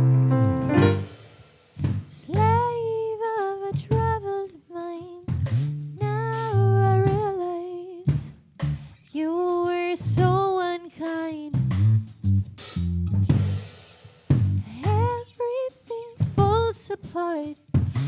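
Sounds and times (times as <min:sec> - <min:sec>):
woman singing wordless notes: 0:06.0 - 0:08.1.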